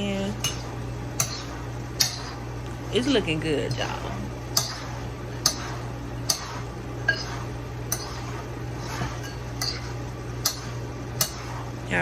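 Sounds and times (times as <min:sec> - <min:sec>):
steady low hum: 0:00.0 - 0:12.0
spoon clinking against a pan: 0:06.2 - 0:08.1, 0:09.2 - 0:11.5.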